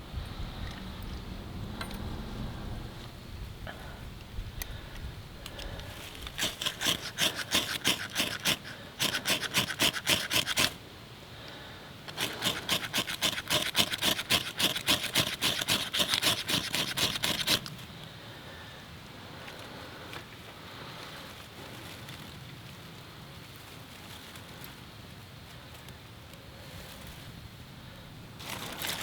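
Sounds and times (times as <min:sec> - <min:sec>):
rhythmic scraping strokes: 0:06.0 - 0:10.8, 0:12.1 - 0:17.7.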